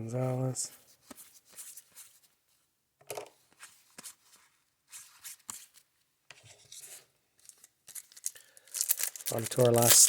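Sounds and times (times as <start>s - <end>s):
cards rubbing and flicking: 9.3s - 10.0s.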